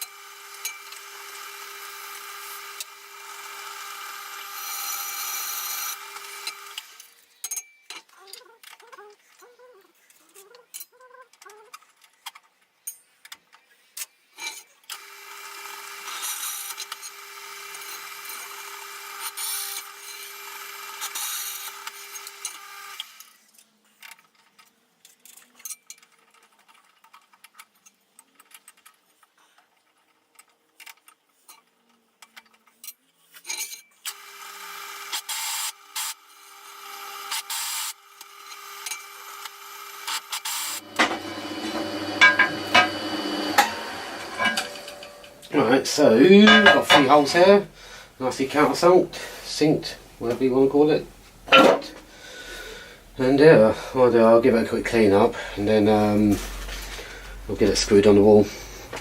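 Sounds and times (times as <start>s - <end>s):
electric drill boring: 0.0s - 7.1s, 14.9s - 23.4s, 34.1s - 45.6s.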